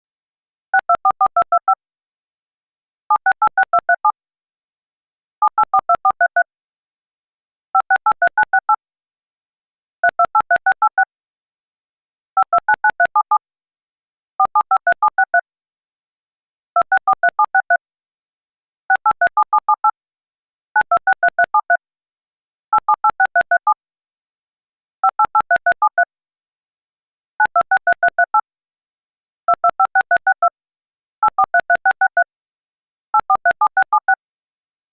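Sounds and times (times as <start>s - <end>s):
touch-tone dialing beeps: 0.8s - 1.8s, 3.1s - 4.2s, 5.4s - 6.5s, 7.8s - 8.8s, 10.0s - 11.1s, 12.4s - 13.4s, 14.4s - 15.5s, 16.8s - 17.8s, 18.9s - 20.0s, 20.8s - 21.8s, 22.8s - 23.8s, 25.0s - 26.1s, 27.4s - 28.4s, 29.5s - 30.5s, 31.2s - 32.3s, 33.2s - 34.2s.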